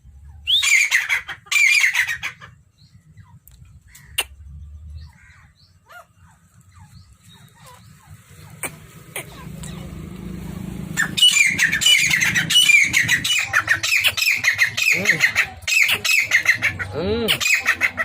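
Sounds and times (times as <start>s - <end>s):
quail calling: 0.3s - 2.6s, 3.2s - 4.4s, 5.0s - 10.3s, 10.9s - 18.0s
faint chirps and clicks: 3.4s - 4.4s.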